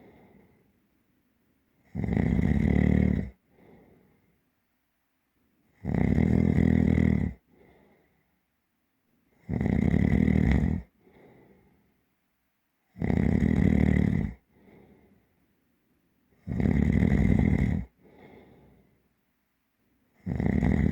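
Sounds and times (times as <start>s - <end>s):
soft breath out: 0.0s - 0.8s, 3.4s - 4.5s, 7.4s - 8.5s, 10.9s - 12.0s, 14.4s - 15.5s, 17.9s - 19.1s
deep heavy snoring: 1.9s - 3.8s, 5.8s - 7.8s, 9.4s - 11.4s, 12.9s - 14.8s, 16.4s - 18.6s, 20.2s - 20.9s.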